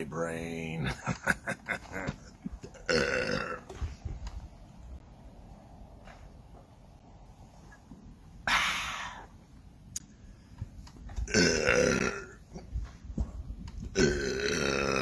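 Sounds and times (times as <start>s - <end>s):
man burping loudly: 1.9s - 3.8s, 11.2s - 12.6s, 13.9s - 15.0s.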